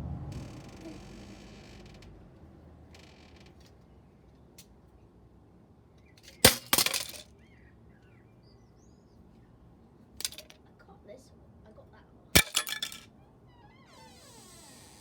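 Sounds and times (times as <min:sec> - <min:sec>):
control panel smashing on ground: 0:06.3 - 0:07.2, 0:12.4 - 0:13.0
breaking pieces clattering: 0:06.3 - 0:07.3, 0:12.4 - 0:13.0.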